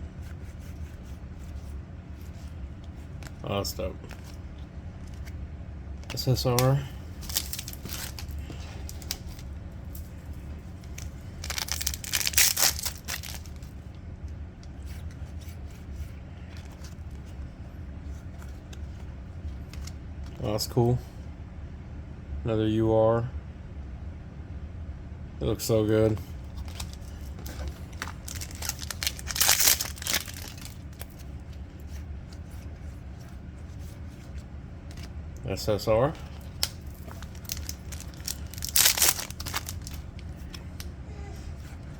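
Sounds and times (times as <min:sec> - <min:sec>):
handling crackles and clicks: 0:06.0 - 0:10.1, 0:10.8 - 0:13.7, 0:18.3 - 0:20.0, 0:26.6 - 0:33.3, 0:36.3 - 0:40.9
foil wrapper tearing and crinkling: 0:06.4 - 0:10.0, 0:10.8 - 0:13.7, 0:26.5 - 0:31.2, 0:36.3 - 0:40.8.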